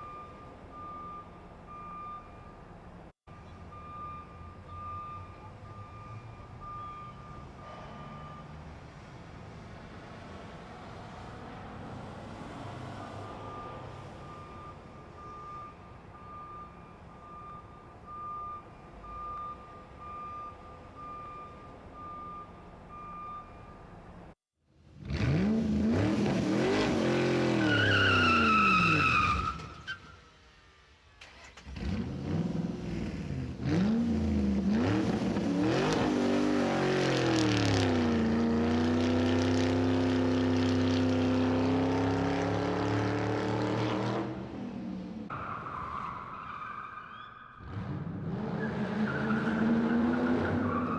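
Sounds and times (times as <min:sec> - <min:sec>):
reversing beeper: 0:03.3 - 0:08.6, 0:13.2 - 0:23.8
tyre squeal: 0:27.6 - 0:30.2
car engine revving: 0:31.5 - 0:44.5.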